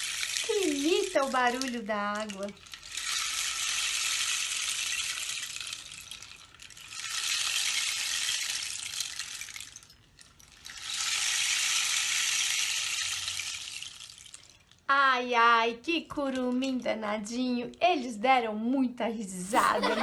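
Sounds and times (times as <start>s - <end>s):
rain stick pellets trickling: 0.0s - 12.3s.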